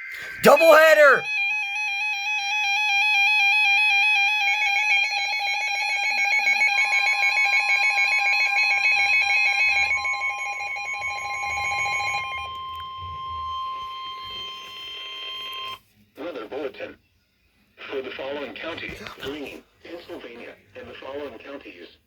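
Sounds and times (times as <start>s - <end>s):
steady warning alarm tone: 5.0s - 15.8s
warbling electronic alarm tone: 6.6s - 13.8s.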